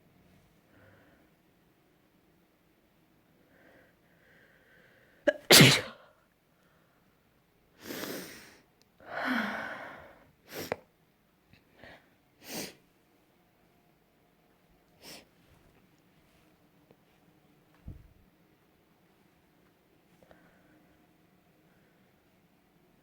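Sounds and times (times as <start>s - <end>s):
breathing: 0.6s - 1.4s, 3.4s - 5.2s, 6.1s - 7.2s, 7.8s - 10.8s, 11.7s - 12.8s, 20.2s - 22.3s
person sneezing: 5.3s - 6.1s.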